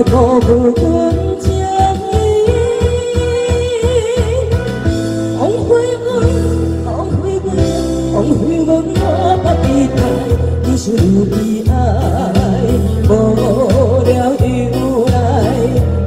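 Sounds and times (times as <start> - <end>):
karaoke backing track: 0.0 - 16.0
person singing with vibrato: 0.0 - 16.0.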